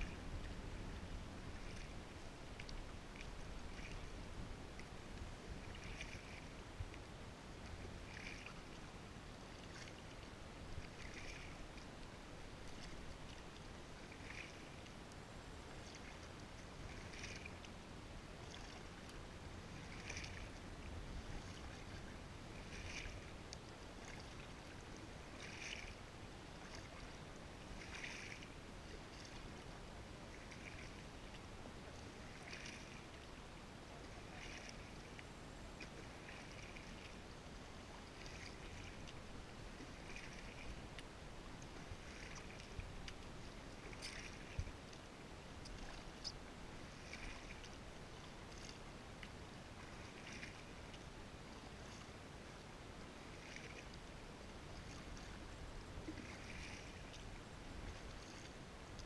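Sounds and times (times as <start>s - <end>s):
paddle splashing in water: 0.0s - 6.6s, 7.6s - 8.8s, 9.5s - 15.0s, 15.7s - 17.8s, 18.4s - 29.6s, 30.3s - 45.1s, 45.7s - 59.0s.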